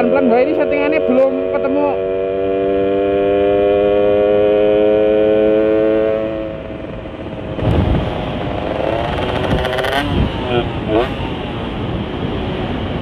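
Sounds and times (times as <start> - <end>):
two-stroke engine running: 6.0 - 11.1.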